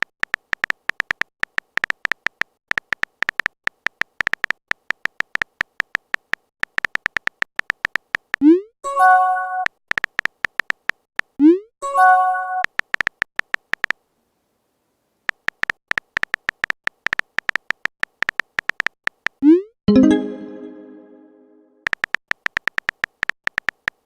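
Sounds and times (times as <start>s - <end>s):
electronic typing ticks: 0.0s - 8.5s, 9.5s - 11.6s, 12.4s - 14.0s, 15.3s - 19.7s, 21.8s - 24.0s
rising swoop notification: 19.9s - 21.7s
notification chime: 19.9s - 21.8s.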